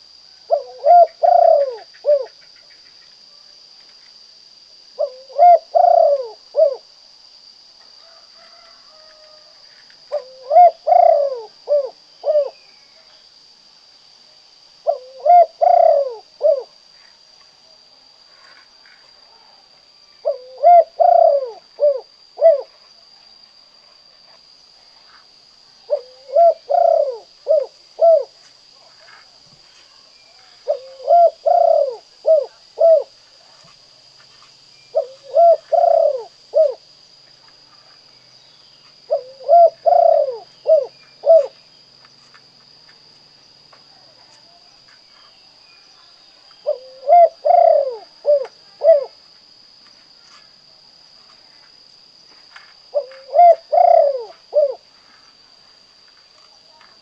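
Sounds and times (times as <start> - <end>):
dove cooing: 0.5 - 2.4, 5.0 - 6.9, 10.1 - 12.6, 14.8 - 16.8, 20.2 - 22.7, 25.9 - 28.4, 30.5 - 33.2, 34.9 - 36.8, 39.1 - 41.6, 46.6 - 49.2, 52.9 - 54.8.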